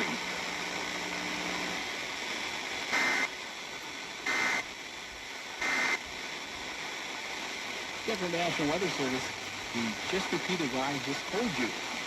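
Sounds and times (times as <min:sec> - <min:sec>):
radio static hiss: 0:00.0 - 0:12.0
digital data bursts: 0:02.7 - 0:03.4, 0:04.2 - 0:06.1, 0:08.0 - 0:11.8.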